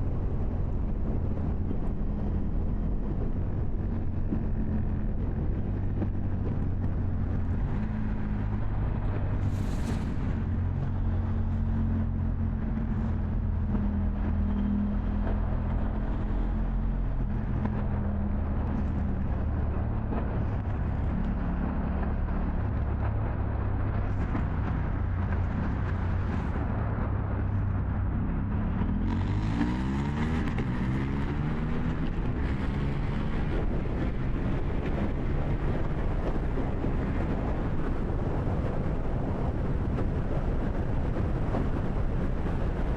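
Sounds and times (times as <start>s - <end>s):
wind noise on microphone: 0.0s - 42.9s.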